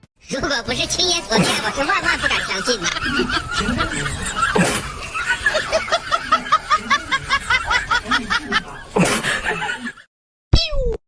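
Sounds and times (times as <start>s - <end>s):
high-pitched giggling laughter: 1.3s - 10.0s.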